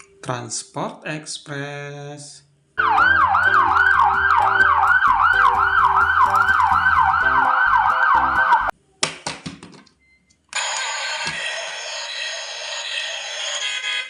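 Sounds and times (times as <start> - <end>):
beeping electronic tune: 2.8 - 8.7
toy siren wailing: 2.8 - 8.7.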